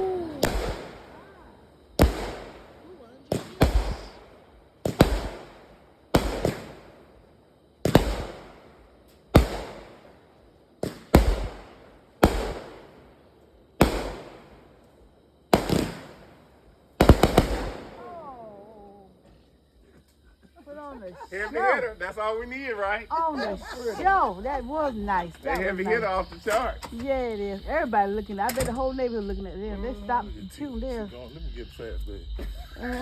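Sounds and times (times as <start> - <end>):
firework shots banging: 0.0 - 13.2, 13.8 - 14.9, 15.5 - 18.3.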